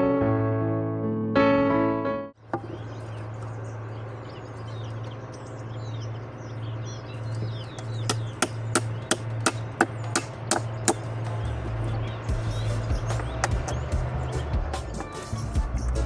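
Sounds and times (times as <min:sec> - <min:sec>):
birds chirping: 0:02.4 - 0:16.0
steady low hum: 0:02.4 - 0:16.0
hammer driving nails into wood: 0:07.8 - 0:11.1.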